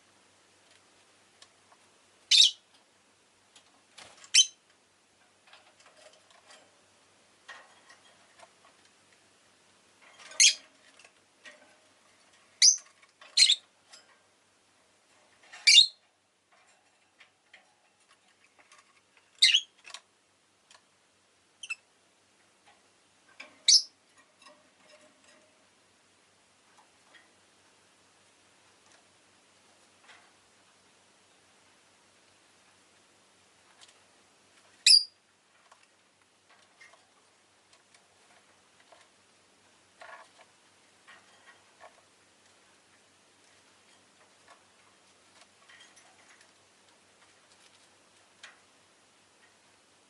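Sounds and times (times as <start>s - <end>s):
lovebird chirping: 2.3s - 2.6s, 4.3s - 4.6s, 10.4s - 10.6s, 12.6s - 13.6s, 15.6s - 16.0s, 19.4s - 19.7s, 21.6s - 21.8s, 23.6s - 23.9s, 34.8s - 35.2s.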